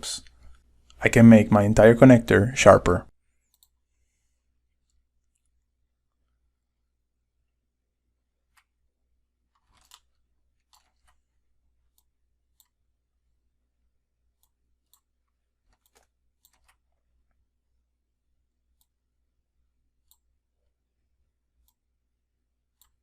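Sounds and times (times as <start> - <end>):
computer mouse clicks: 3.5 - 3.8, 11.9 - 12.8, 14.4 - 15.1, 15.7 - 16.9, 18.8 - 19.0, 20.0 - 20.3, 22.7 - 23.0.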